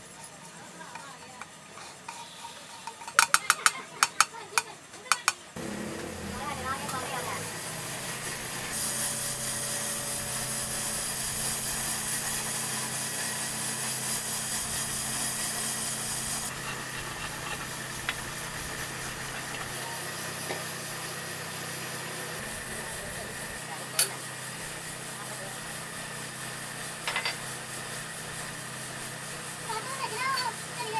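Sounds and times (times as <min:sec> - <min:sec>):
loud steady hiss: 0:05.6 - 0:19.8
low machine hum: 0:05.6 - 0:19.9.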